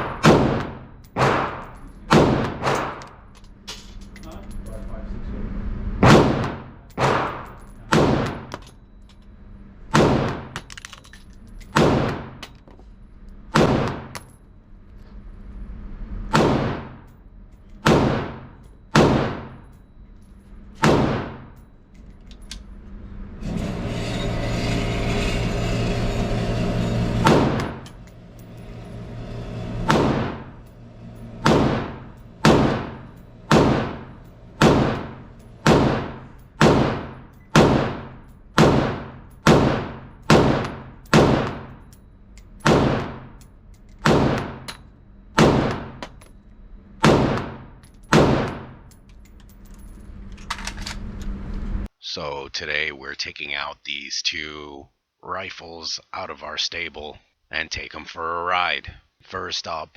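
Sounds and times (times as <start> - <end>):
rifle shots with ringing echo: 0.0 - 3.0, 6.0 - 8.5, 9.9 - 10.6, 16.3 - 17.0, 17.8 - 19.6, 20.8 - 21.5, 31.4 - 41.8, 42.6 - 43.3, 44.0 - 44.7, 45.4 - 46.0, 47.0 - 48.7.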